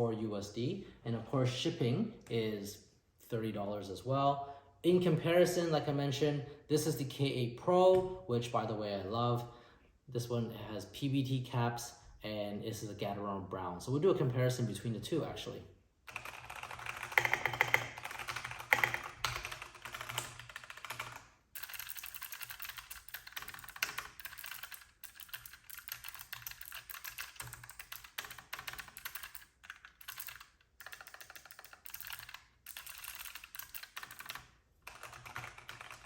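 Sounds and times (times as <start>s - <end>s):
fast typing on mechanical keyboard: 16.1s - 36.0s.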